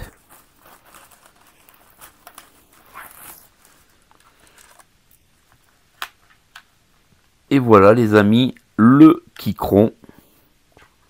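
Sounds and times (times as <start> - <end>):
protective sleeve rustling: 0.0 - 6.6.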